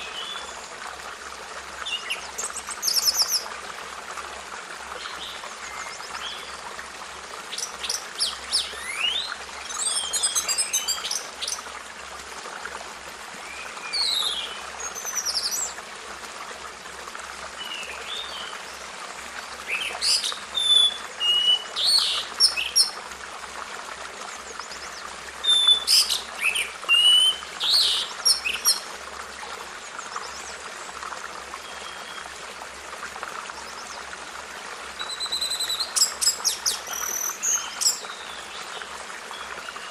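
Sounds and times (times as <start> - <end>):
birds chirping and trilling: 19.7 - 22.9, 25.5 - 28.9.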